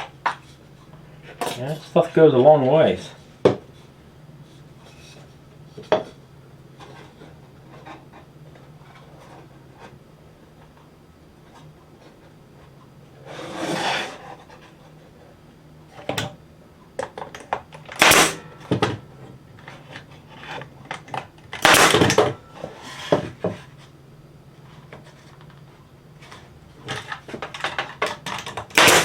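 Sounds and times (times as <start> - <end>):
rubbing or scraping bursts: 13.2 - 14.8
wood and tools being set down: 18.4 - 21.3.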